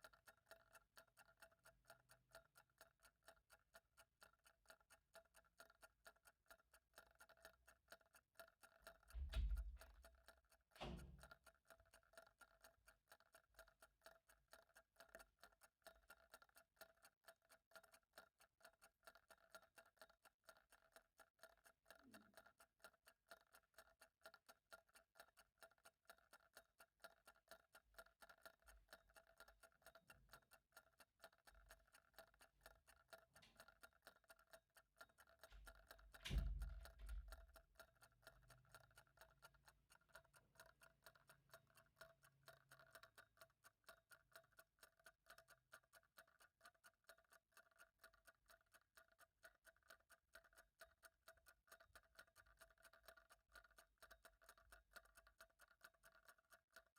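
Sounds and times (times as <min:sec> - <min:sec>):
clock ticking: 0:00.0 - 0:56.9.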